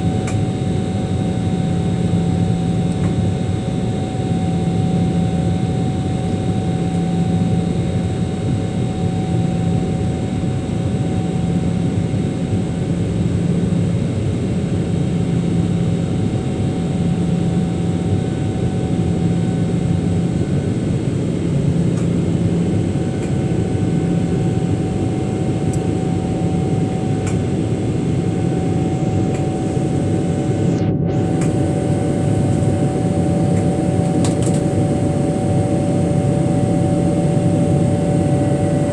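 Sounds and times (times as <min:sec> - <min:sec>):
jet engines droning: 0:00.0 - 0:38.9
low hum: 0:19.7 - 0:38.9.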